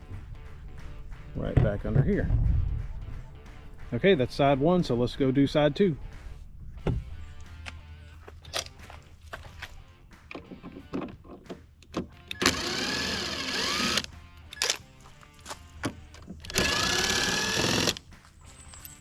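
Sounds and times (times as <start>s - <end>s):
faint background music: 0.0s - 19.0s
power driver whirring: 12.3s - 14.8s, 16.4s - 18.0s.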